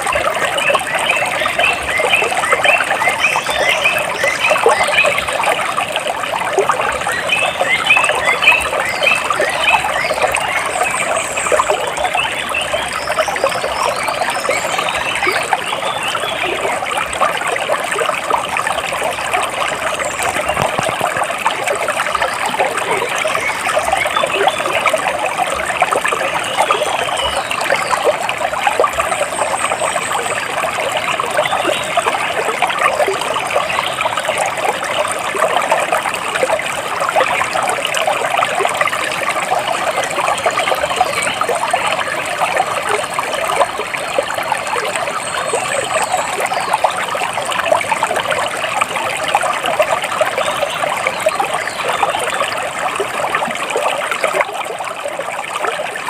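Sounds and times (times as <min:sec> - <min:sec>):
water splashing and trickling: 0:00.0 - 0:56.0.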